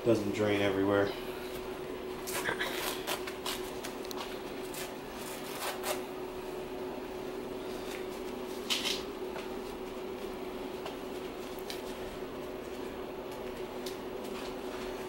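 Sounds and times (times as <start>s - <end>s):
steady low hum: 0.0s - 15.0s
paper towel tearing: 2.2s - 4.0s, 4.6s - 6.1s.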